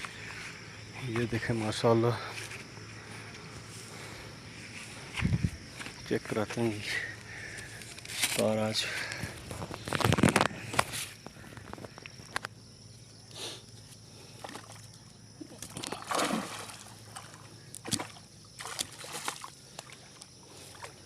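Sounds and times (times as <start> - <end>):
water sloshing and splashing: 14.2 - 21.0.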